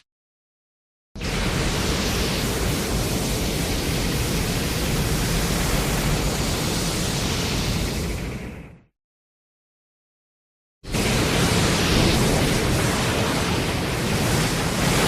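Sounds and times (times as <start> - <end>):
loud rushing noise: 10.9 - 15.0.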